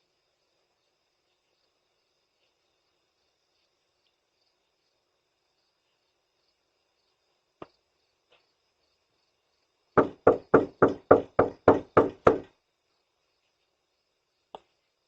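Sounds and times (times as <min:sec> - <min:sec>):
loud knocks on a door: 0:10.0 - 0:12.5.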